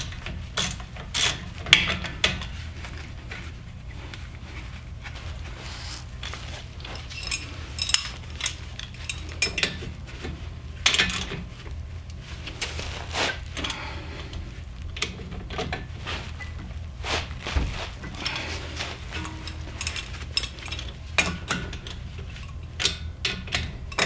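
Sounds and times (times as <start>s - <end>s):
metal tools clinking: 19.1s - 20.9s.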